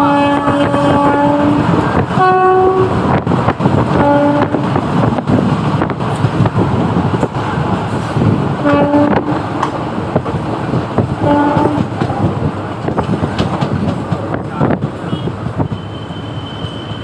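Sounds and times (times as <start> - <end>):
train horn blasts: 0.0 - 3.2, 3.9 - 4.8, 8.6 - 9.6, 11.2 - 11.9, 15.1 - 17.0
train rumble and clatter: 0.0 - 17.0.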